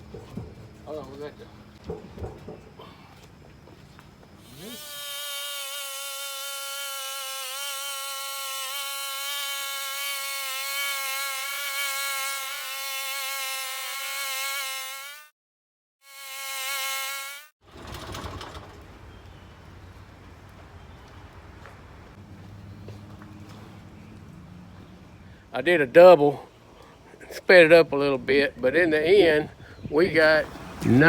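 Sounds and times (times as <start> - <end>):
sawmill high buzzing whine: 4.4 - 15.3, 16.0 - 17.5.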